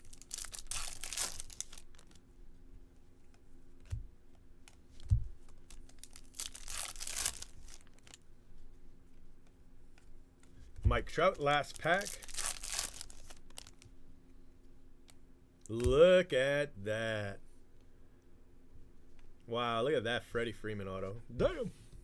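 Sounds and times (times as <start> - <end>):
foil wrapper tearing and crinkling: 0.0 - 2.2, 5.5 - 8.2, 11.3 - 13.9.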